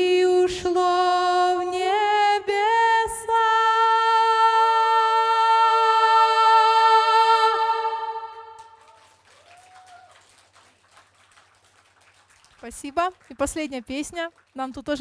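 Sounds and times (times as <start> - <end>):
two voices singing in harmony: 0.0 - 8.8.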